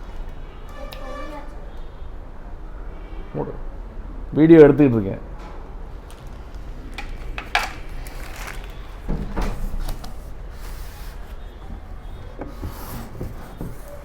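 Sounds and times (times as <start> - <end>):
packaging rustling: 5.9 - 14.0
cardboard box knocks and scrapes: 8.6 - 14.0.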